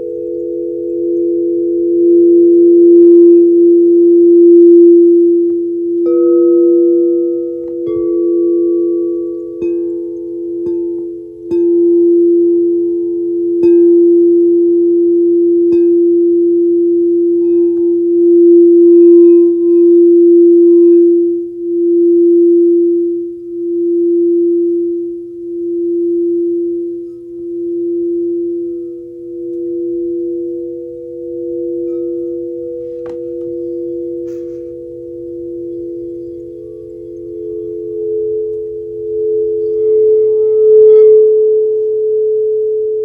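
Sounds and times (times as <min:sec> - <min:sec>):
singing bowl ringing: 0:00.0 - 0:43.0
singing bowl strikes: 0:00.0 - 0:43.0.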